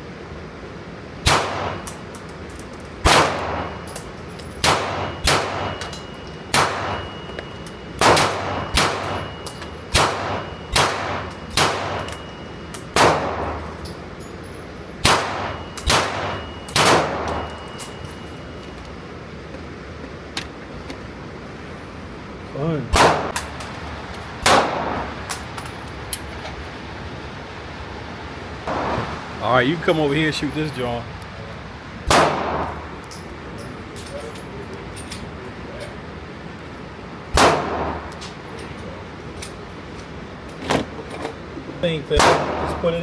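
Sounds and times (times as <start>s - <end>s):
gunshots with echo: 1.3s - 1.8s, 3.0s - 3.8s, 4.6s - 5.8s, 6.5s - 7.0s, 8.0s - 9.3s, 9.9s - 12.1s, 12.9s - 13.7s, 15.0s - 17.5s, 22.9s - 23.4s, 28.7s - 29.3s, 32.1s - 32.9s, 37.3s - 38.1s, 42.2s - 42.8s.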